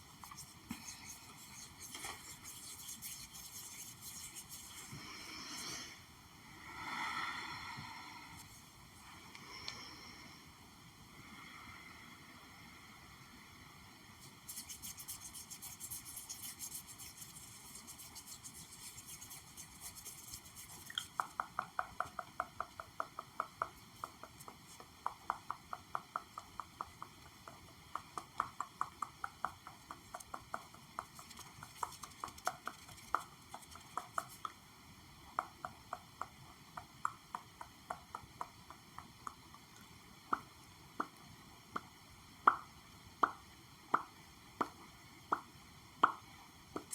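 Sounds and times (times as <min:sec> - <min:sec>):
fingers tapping on objects: 0:14.5 - 0:34.6, 0:35.3 - 0:39.4, 0:42.5 - 0:46.9.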